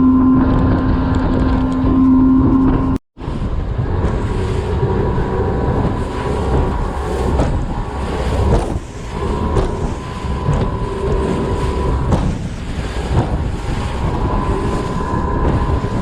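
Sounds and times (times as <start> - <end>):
hull slamming into waves: 0.0 - 16.0
outboard motor running at speed: 0.0 - 16.0
wind buffeting microphone: 0.0 - 16.0.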